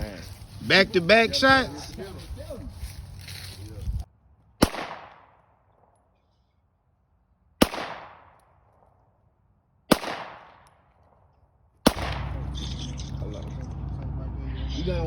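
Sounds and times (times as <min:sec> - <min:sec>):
pistol shots echoing: 0:04.6 - 0:05.5, 0:07.6 - 0:08.9, 0:09.9 - 0:10.9, 0:11.8 - 0:12.6.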